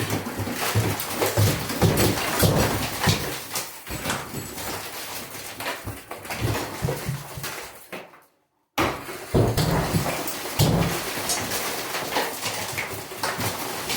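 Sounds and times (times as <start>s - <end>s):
concrete chunks clattering down: 0.0s - 8.2s, 8.8s - 13.9s
pickaxe striking concrete: 0.2s - 4.2s, 8.8s - 11.4s.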